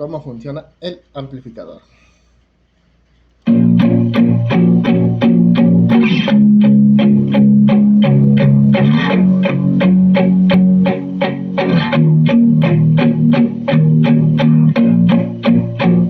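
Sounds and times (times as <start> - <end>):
guitar-led song over loudspeakers: 3.5 - 16.0.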